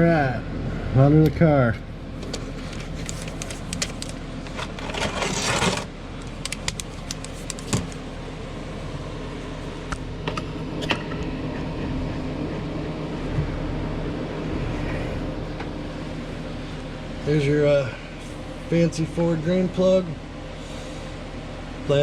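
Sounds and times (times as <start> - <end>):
steady low hum: 0.0 - 22.0
rustling scrape: 2.4 - 5.9.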